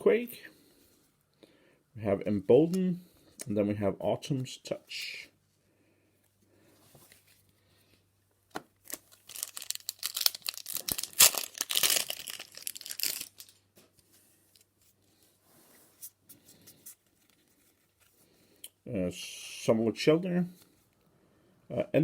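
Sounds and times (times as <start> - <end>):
foil wrapper tearing and crinkling: 8.9 - 13.6.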